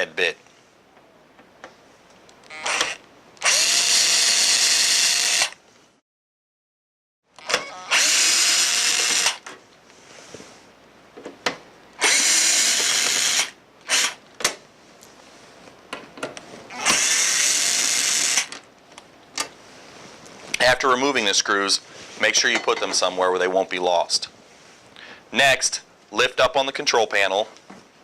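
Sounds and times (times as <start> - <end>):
power drill backing out screws: 7.4 - 9.5, 12.0 - 14.2.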